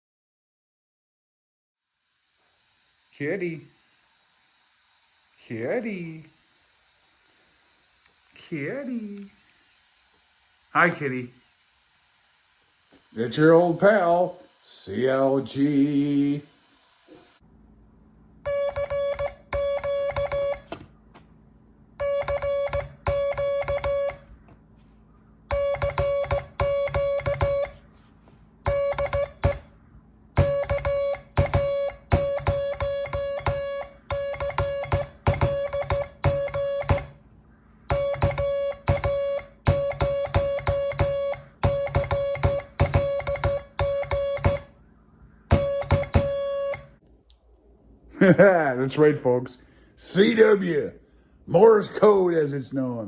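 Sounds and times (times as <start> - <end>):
morse code beeps: 18.4 - 20.7, 22.0 - 24.3, 25.5 - 27.8, 28.6 - 29.7, 30.4 - 37.2, 37.9 - 44.7, 45.5 - 47.0.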